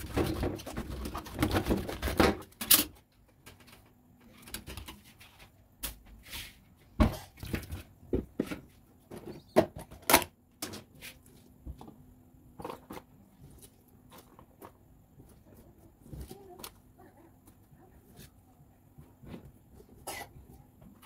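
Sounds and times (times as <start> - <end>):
kitchen items knocking and clacking: 0.0 - 5.0.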